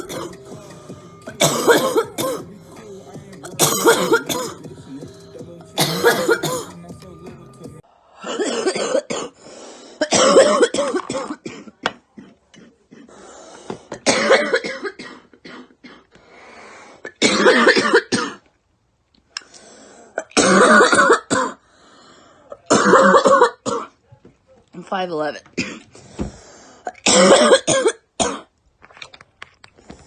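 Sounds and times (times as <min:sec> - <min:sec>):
girl coughing hoarsely: 0:00.0 - 0:00.4, 0:01.3 - 0:02.5, 0:03.4 - 0:04.7, 0:05.8 - 0:06.8, 0:08.2 - 0:09.4, 0:10.0 - 0:13.2, 0:14.0 - 0:16.0, 0:17.2 - 0:18.4, 0:20.2 - 0:21.6, 0:22.7 - 0:24.0, 0:25.6 - 0:25.9, 0:26.9 - 0:28.5
faint breathing: 0:09.4 - 0:10.0, 0:13.1 - 0:13.9, 0:16.1 - 0:17.1, 0:19.3 - 0:20.2, 0:21.6 - 0:22.6, 0:25.9 - 0:26.8.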